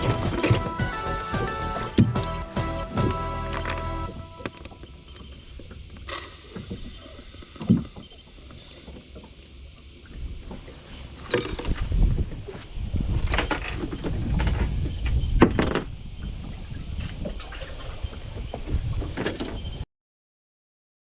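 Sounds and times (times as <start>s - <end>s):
wind rumble on microphone: 10.1s - 19.8s
knocks and clatter on boat: 11.4s - 19.8s.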